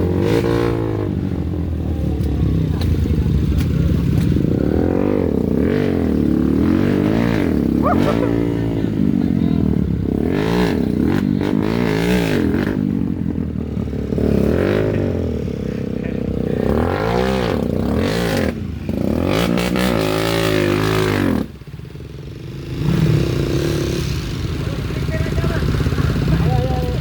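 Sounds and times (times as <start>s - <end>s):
motorcycle engine revving: 0.0s - 27.0s.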